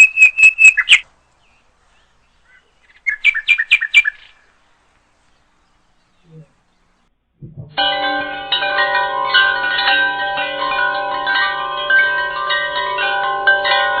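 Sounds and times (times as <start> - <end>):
chiming bell-like music: 7.8 - 14.0.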